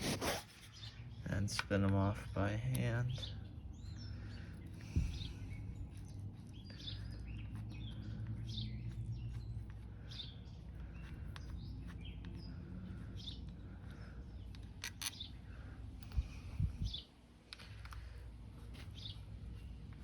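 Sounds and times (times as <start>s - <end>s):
small birds chirping: 0.0s - 20.0s
steady low rumble: 12.4s - 17.1s.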